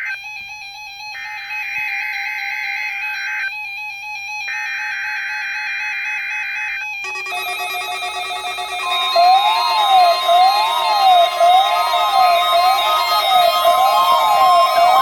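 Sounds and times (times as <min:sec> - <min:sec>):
digital data screech: 0:07.0 - 0:15.0
rising and falling siren tone: 0:07.0 - 0:15.0
steady alert tone: 0:07.0 - 0:15.0.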